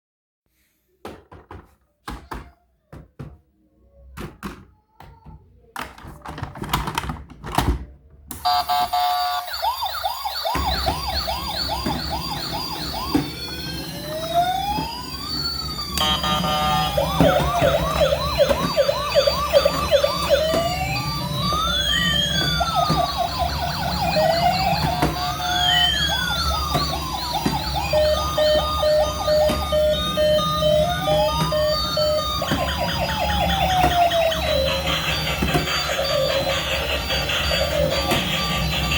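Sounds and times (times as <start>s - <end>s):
electronic toy sirens: 8.4s - 38.9s.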